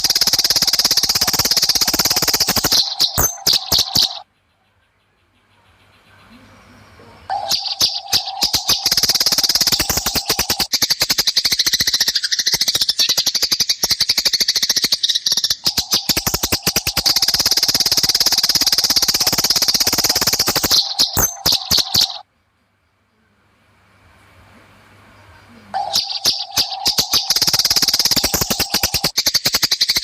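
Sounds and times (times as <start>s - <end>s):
sparrows chattering harshly: 0.0s - 22.3s, 25.6s - 30.0s.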